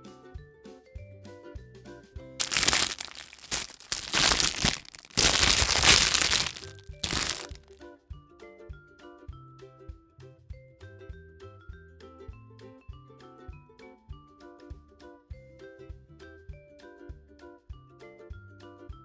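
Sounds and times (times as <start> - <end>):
light music with mallet notes: 0.0 - 2.2, 8.2 - 19.0
wrapper crinkling and tearing: 2.4 - 7.7.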